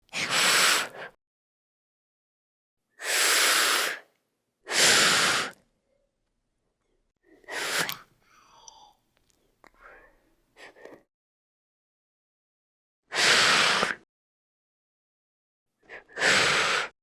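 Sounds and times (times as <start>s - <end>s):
creature breathy hisses: 4.7s - 5.6s, 15.9s - 17.0s.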